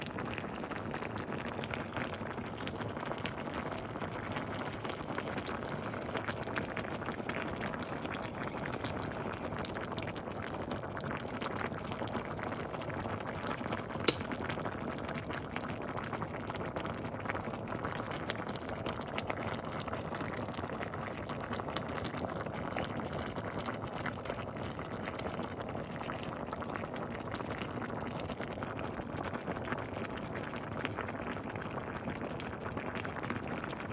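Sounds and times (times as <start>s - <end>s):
stew bubbling at a boil: 0.0s - 33.9s
sharp click: 14.1s - 14.3s.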